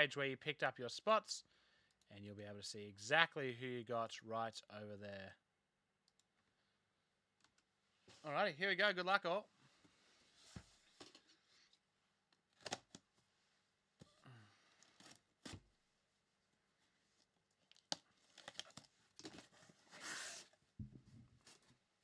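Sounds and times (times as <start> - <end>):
packaging tearing and crinkling: 17.7 - 20.4.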